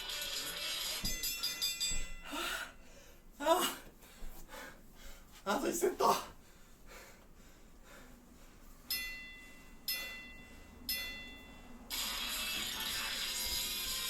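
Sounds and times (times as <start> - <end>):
bell-like chime tones: 0.0 - 2.6, 8.9 - 13.6.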